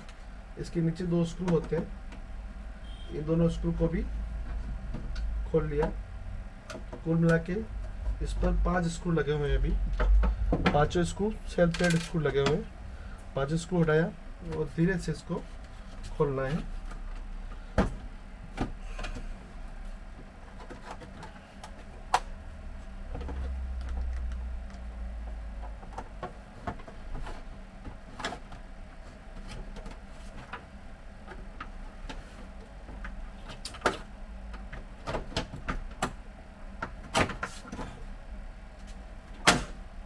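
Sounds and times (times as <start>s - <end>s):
low handling rumble: 3.3s - 15.4s.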